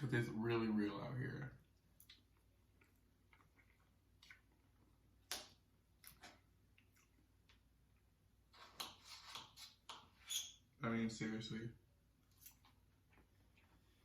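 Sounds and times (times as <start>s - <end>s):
mouth clicks and smacks chewing: 1.8s - 8.1s.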